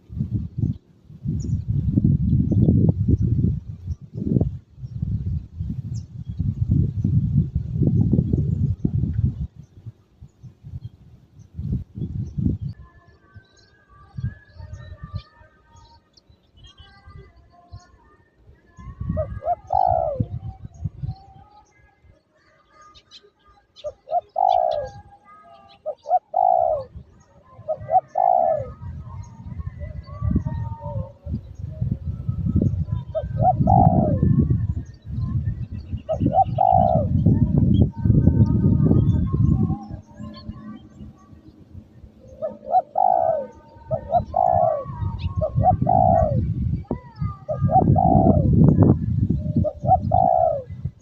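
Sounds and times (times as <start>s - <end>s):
wind rumble on microphone: 0.0s - 51.0s
dove cooing: 19.0s - 20.6s, 23.8s - 50.9s.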